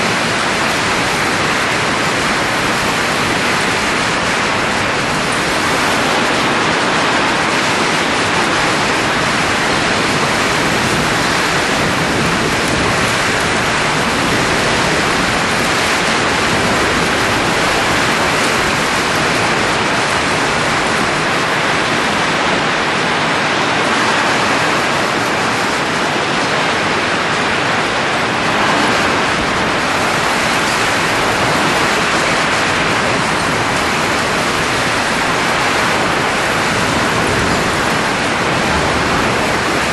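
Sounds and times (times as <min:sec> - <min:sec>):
blown air rushing: 0:24.4 - 0:39.9.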